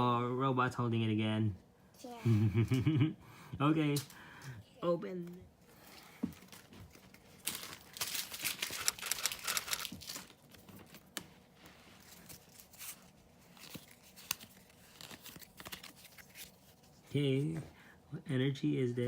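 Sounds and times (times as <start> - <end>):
foil wrapper tearing and crinkling: 7.3 - 10.8, 12.2 - 16.7.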